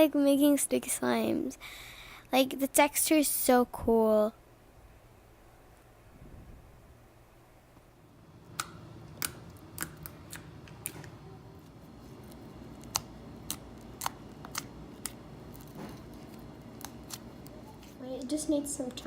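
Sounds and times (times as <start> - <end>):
slime clicking and popping: 12.8 - 15.7.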